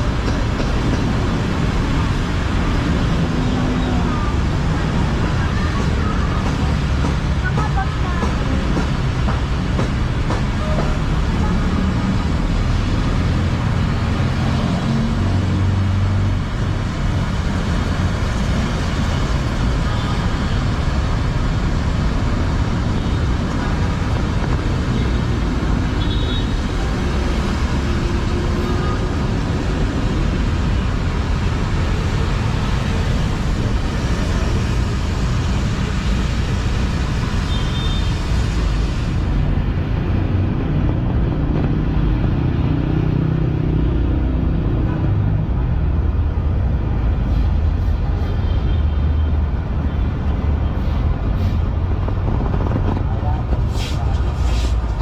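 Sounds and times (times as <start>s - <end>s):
low city rumble: 0.0s - 55.0s.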